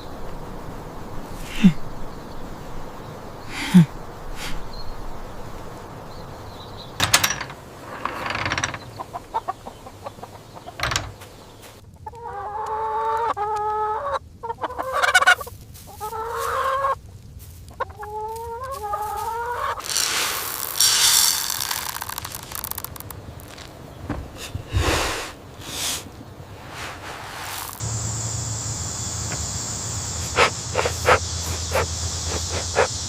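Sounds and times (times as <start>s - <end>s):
chickens calling: 3.3s - 33.0s
short rushing hiss: 4.4s - 4.6s, 19.8s - 22.8s, 24.3s - 27.8s
scattered knocks: 7.0s - 9.6s, 10.6s - 11.4s.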